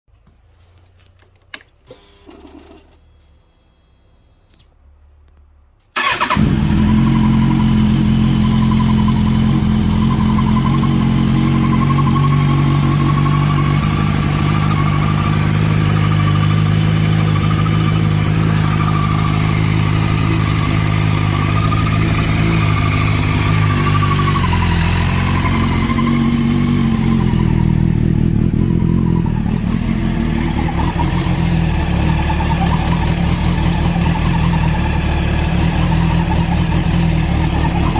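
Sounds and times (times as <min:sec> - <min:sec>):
motorcycle engine idling: 0:06.0 - 0:37.9.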